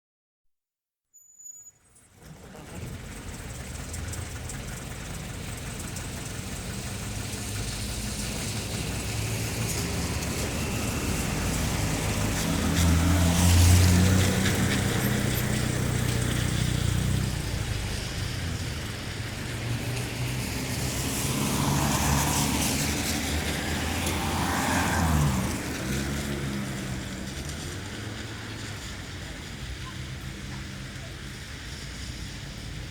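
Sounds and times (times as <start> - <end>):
car engines running: 1.9 - 32.9
tyres hissing on wet road: 2.1 - 32.9.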